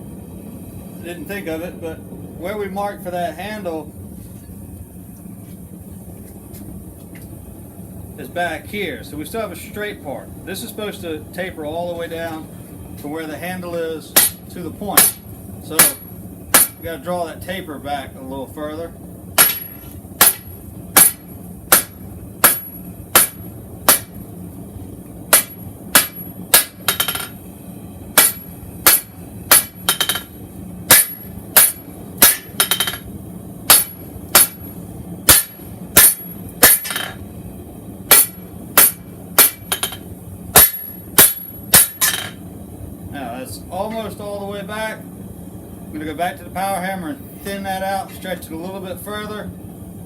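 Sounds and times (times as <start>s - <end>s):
hammer striking steel on anvil: 14.1s - 16.9s, 19.4s - 24.2s, 25.3s - 27.4s, 28.2s - 33.1s, 33.7s - 34.7s, 35.3s - 37.2s, 38.1s - 42.4s.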